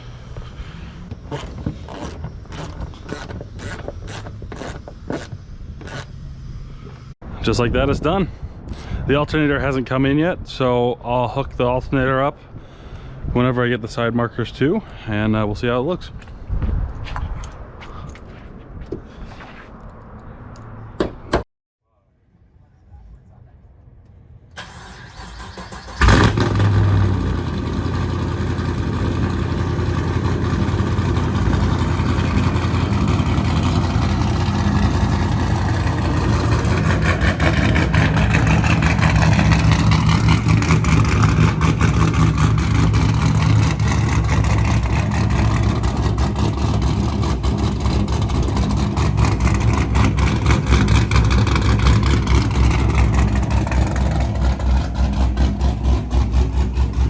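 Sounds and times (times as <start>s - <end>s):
car engine starting and idling: 24.5s - 57.0s.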